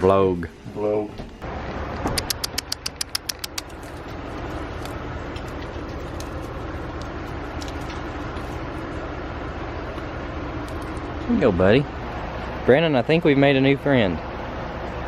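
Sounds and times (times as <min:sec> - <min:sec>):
sharp clicks: 0:02.1 - 0:04.0.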